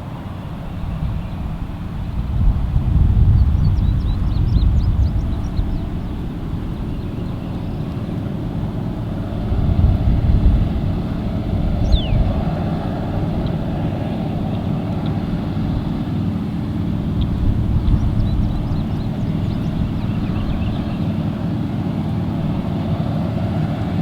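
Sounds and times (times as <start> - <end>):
combine harvester rumbling: 0.0 - 24.0.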